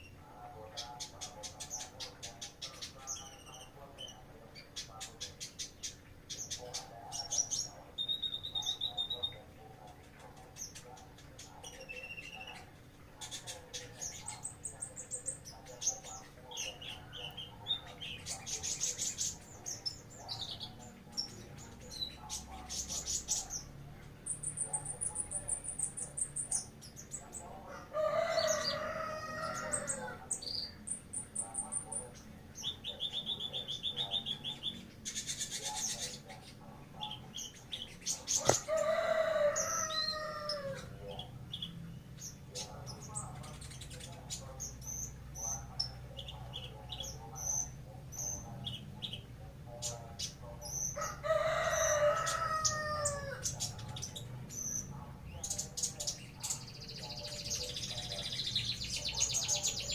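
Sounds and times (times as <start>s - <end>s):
songbirds chirping and singing: 0.0s - 59.9s
rooster crowing: 27.7s - 30.2s, 38.4s - 40.9s, 51.0s - 53.5s.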